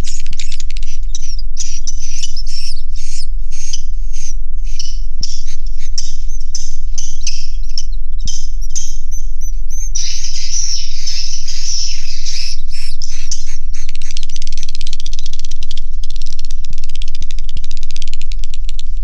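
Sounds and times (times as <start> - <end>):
swiftlets twittering: 0.0 - 16.1
fast dry ticking rattle: 9.8 - 19.0.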